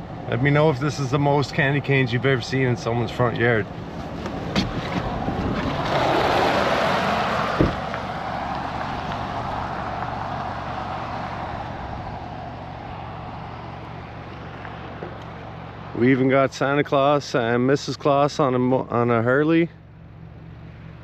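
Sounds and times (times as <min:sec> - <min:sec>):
vehicle passing: 0:00.0 - 0:16.2.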